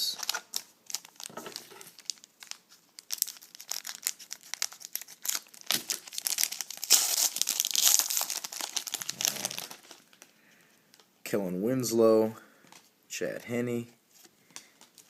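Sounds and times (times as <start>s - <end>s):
card pack wrapper crinkling: 0.0s - 10.3s.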